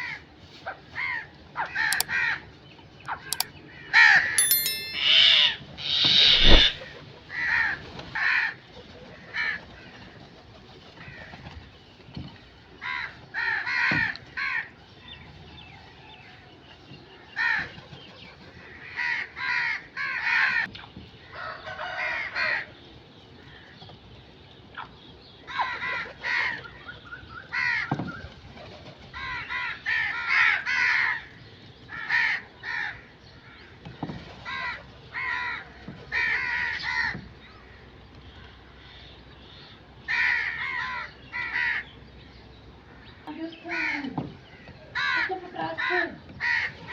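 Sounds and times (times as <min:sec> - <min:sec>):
crows cawing: 0:40.1 - 0:41.9, 0:45.0 - 0:46.7.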